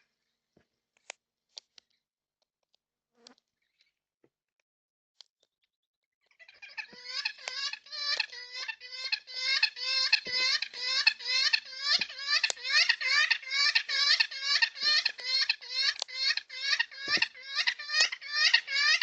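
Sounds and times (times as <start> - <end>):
bird calling harsh notes: 6.5 - 19.0.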